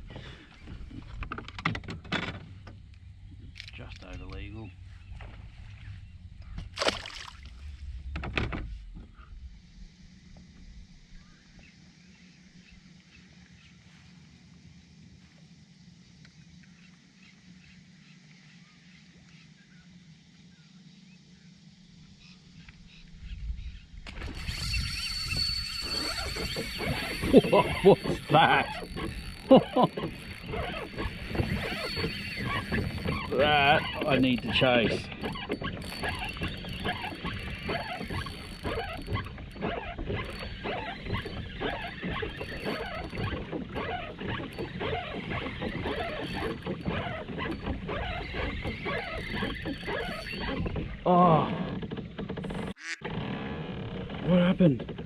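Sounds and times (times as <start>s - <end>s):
low background rumble: 2.0s - 13.7s
kayak paddle splashing: 6.7s - 7.8s, 24.1s - 51.4s.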